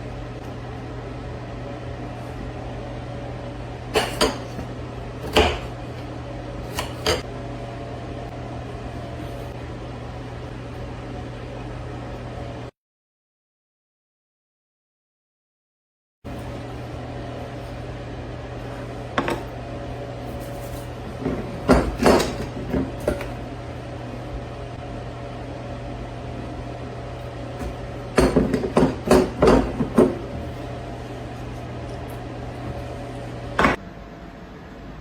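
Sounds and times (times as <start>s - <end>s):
steady low hum: 0.0s - 12.7s, 16.3s - 35.0s
dishes and utensils clinking: 27.6s - 30.2s.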